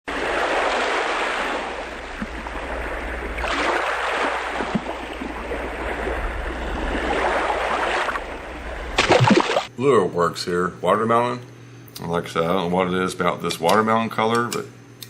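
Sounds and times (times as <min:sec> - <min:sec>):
rushing water: 0:00.1 - 0:09.7
low rumble: 0:04.4 - 0:09.3.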